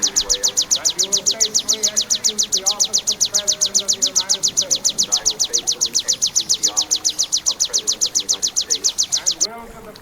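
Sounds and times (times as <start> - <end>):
bird singing rapid high chips: 0.0 - 9.5.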